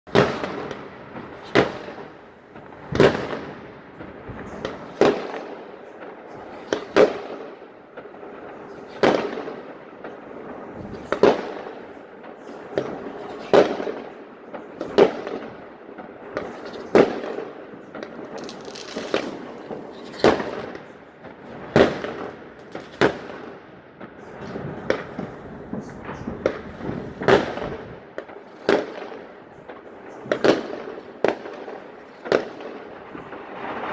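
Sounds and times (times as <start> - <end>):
fireworks banging: 0.1 - 33.9
fireworks popping and crackling: 0.1 - 33.9.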